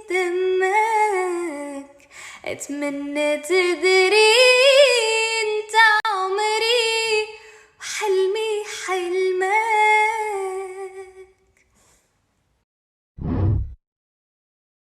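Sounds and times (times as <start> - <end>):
woman singing unaccompanied: 0.0 - 11.3
breath: 2.0 - 2.4, 7.4 - 7.8, 11.6 - 12.2.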